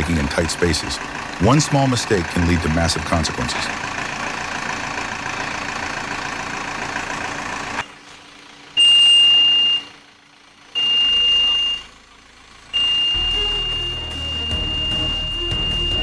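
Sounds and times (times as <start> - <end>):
heavy machine engine running: 0.0 - 16.0
backup alarm beeps: 8.8 - 10.0, 10.8 - 11.9, 12.8 - 16.0.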